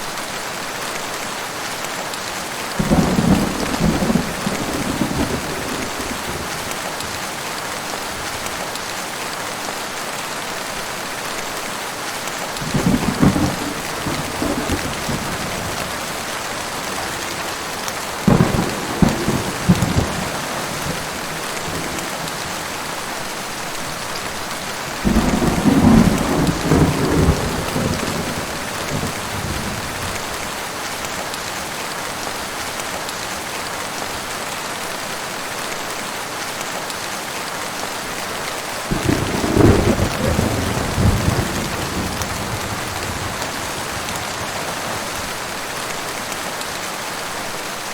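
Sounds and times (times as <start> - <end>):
heavy rain: 0.0 - 47.9
thunder rumbling: 2.8 - 6.8, 12.6 - 23.0, 25.0 - 30.4, 38.9 - 45.4.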